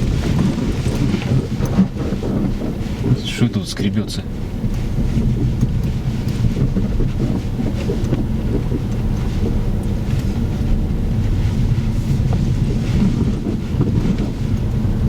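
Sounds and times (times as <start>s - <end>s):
car road rumble inside cabin: 0.0s - 15.0s
faint ticks: 4.3s - 15.0s.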